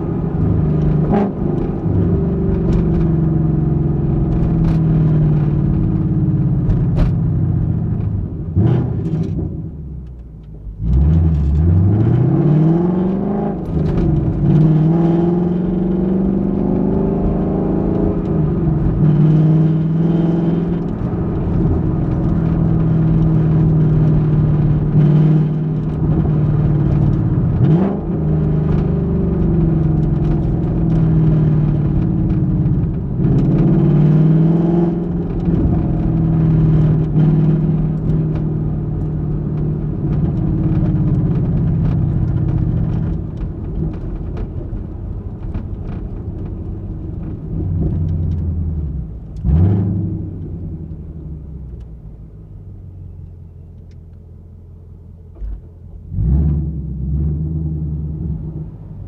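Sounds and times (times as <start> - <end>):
car exhaust revving: 10.7 - 53.6.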